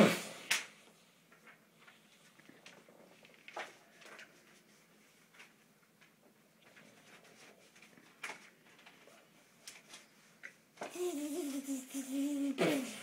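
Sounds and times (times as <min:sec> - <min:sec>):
child making buzzing vocal sound: 0:10.9 - 0:13.0.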